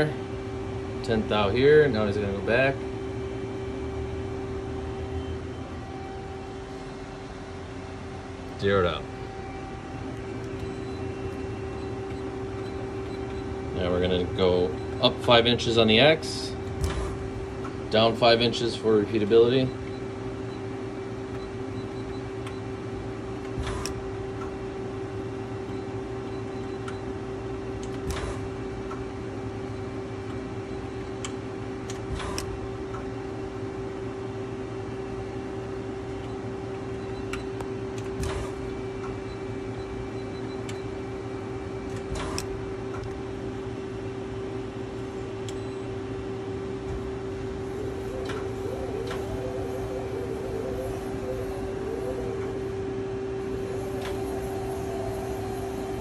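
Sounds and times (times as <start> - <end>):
lathe humming: 45.1 - 56.0.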